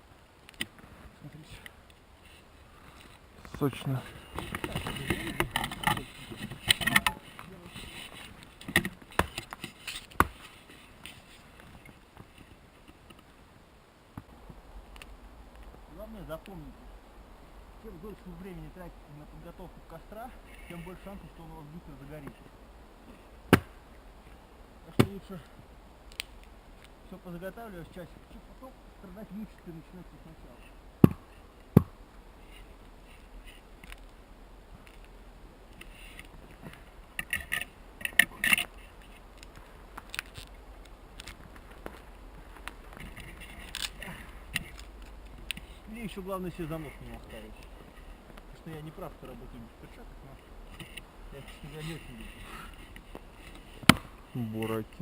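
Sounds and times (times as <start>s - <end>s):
faint rustles: 0.1s - 55.0s
sharp knocks of wood being worked: 8.6s - 10.4s, 23.5s - 23.8s, 24.9s - 25.3s, 31.0s - 32.0s, 53.8s - 54.2s
faint clicks and rustling: 34.8s - 55.0s.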